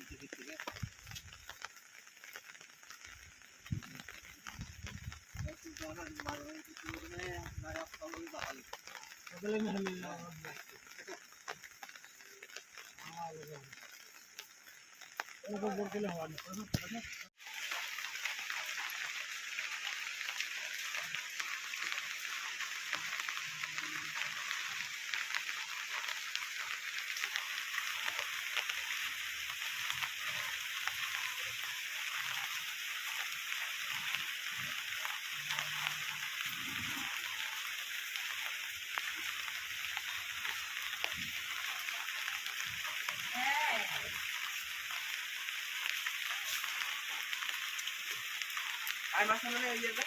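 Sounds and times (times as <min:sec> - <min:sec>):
rain falling: 0:00.0 - 0:50.0.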